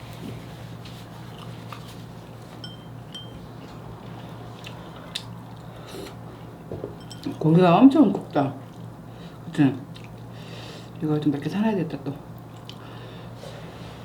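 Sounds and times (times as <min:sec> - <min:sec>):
steady low hum: 0:00.0 - 0:14.0
close-up chewing: 0:01.2 - 0:02.1.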